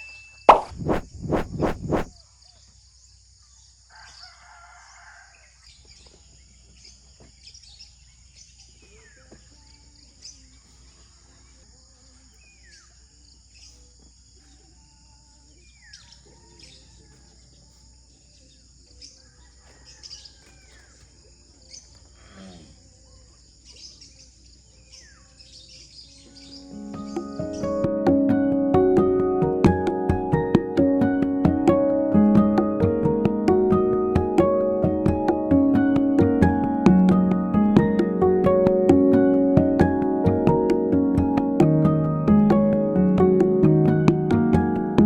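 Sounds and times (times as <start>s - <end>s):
insects droning: 0.0s - 27.8s.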